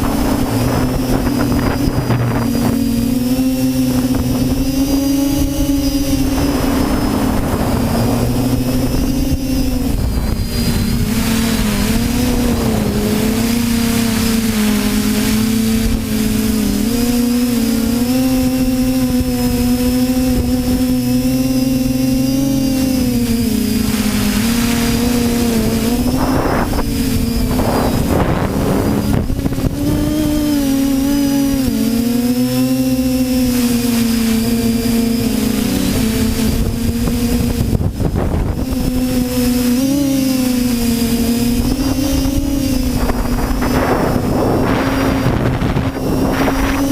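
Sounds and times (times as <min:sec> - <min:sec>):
rushing noise: 0:00.0 - 0:16.2, 0:40.6 - 0:46.9
quadcopter motors droning: 0:00.0 - 0:46.9
wind rushing over microphone: 0:00.0 - 0:46.9.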